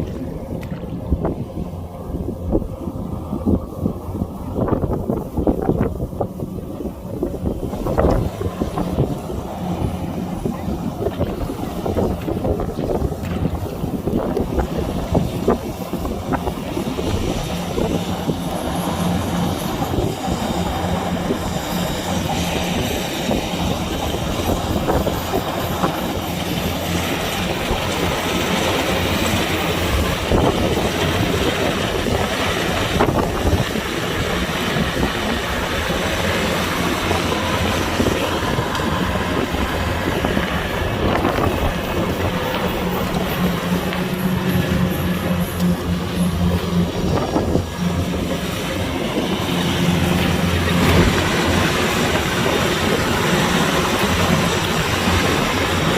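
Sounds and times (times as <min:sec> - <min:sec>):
diesel engine drone: 0:00.0 - 0:55.9.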